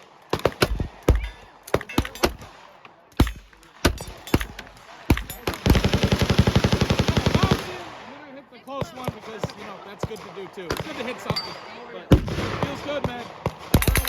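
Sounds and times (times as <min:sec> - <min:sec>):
single gunshots: 0:00.0 - 0:05.9, 0:12.1 - 0:14.0
automatic machine-gun fire: 0:05.5 - 0:07.9.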